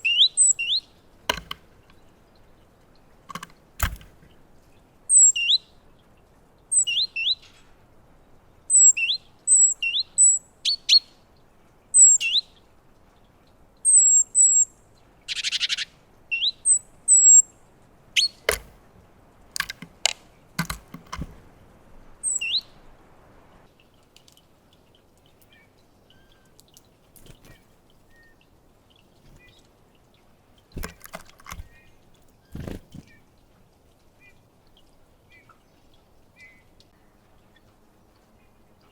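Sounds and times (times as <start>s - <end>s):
birds chirping: 0.0s - 23.6s, 25.3s - 38.9s
buzzy bird rattle: 1.2s - 2.1s, 3.2s - 4.4s, 18.3s - 18.9s, 19.6s - 21.6s, 27.1s - 27.8s, 30.7s - 33.2s
knocks on a feeder: 1.3s - 1.6s.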